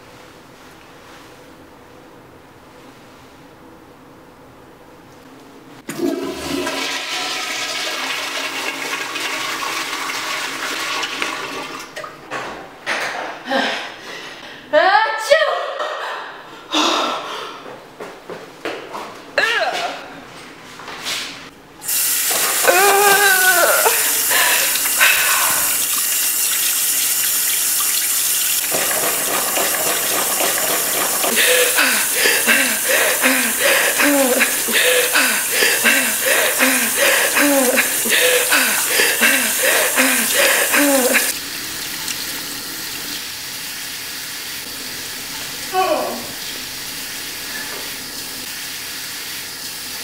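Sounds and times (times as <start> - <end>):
running water: 21.8 - 50.0.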